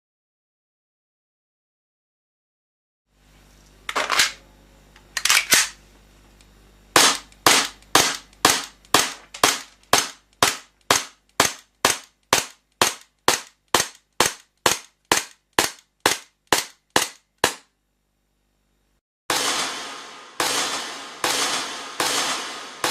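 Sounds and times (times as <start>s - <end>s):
airsoft pistol shots: 7.0s - 17.6s, 19.3s - 22.9s.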